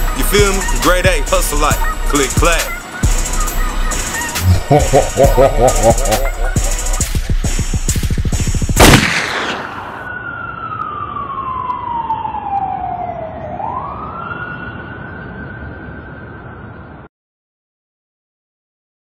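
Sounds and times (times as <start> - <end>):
music beat with loud hit: 0.0 - 9.2
siren wail: 9.5 - 17.1.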